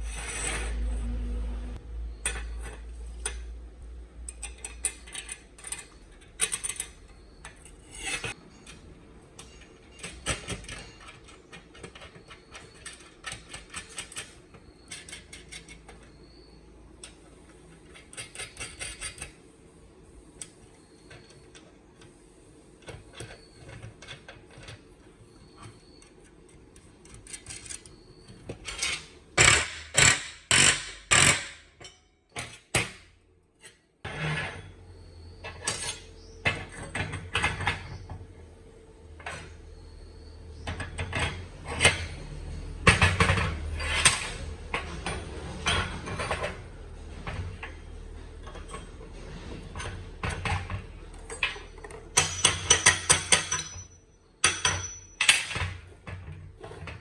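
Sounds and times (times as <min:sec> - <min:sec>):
low machine hum: 0:00.0 - 0:11.1.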